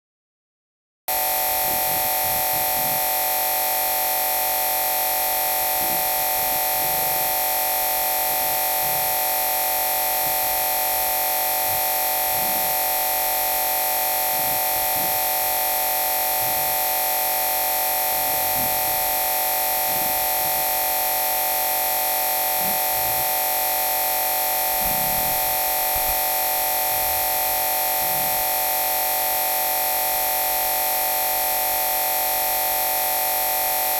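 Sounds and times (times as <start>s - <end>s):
electronic buzz and hiss: 1.1s - 33.9s.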